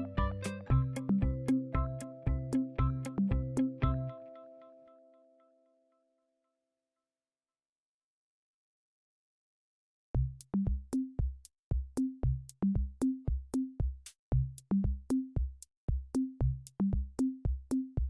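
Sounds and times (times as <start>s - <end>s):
electronic drum-machine beat: 0.0s - 4.1s, 10.2s - 18.0s.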